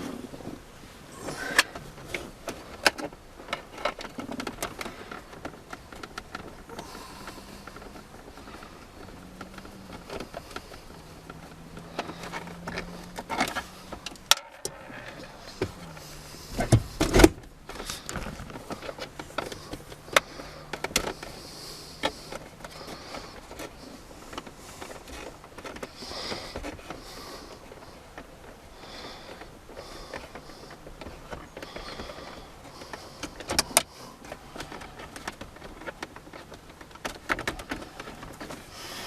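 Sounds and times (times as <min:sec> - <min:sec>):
faint steady hum: 0:00.0 - 0:39.0
plastic trim clicks and rattles: 0:30.1 - 0:38.7.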